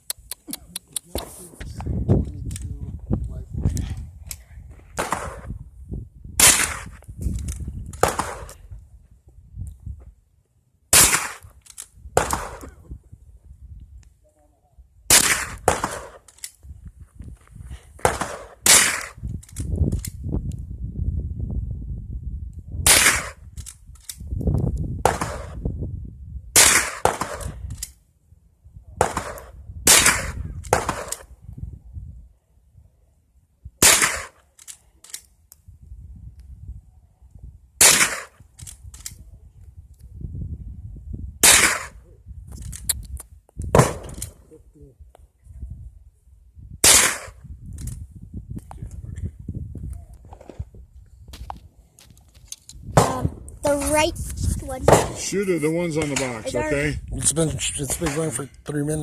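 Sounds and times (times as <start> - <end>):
sharp gunshots: 5.0 - 5.6, 6.4 - 7.0, 8.0 - 8.6, 10.9 - 11.5, 12.2 - 12.8, 15.1 - 16.3, 18.0 - 19.2, 22.8 - 23.4, 25.0 - 25.6, 26.6 - 27.6, 29.0 - 31.3, 33.8 - 34.4, 37.8 - 38.4, 41.4 - 42.0, 43.7 - 44.4, 46.8 - 47.4, 54.9 - 55.4, 57.9 - 58.4.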